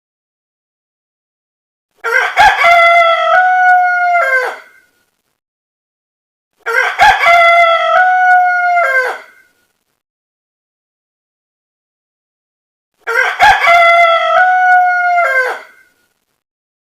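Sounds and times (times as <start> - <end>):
rooster crowing: 2.0 - 4.9, 6.6 - 9.5, 13.0 - 16.0.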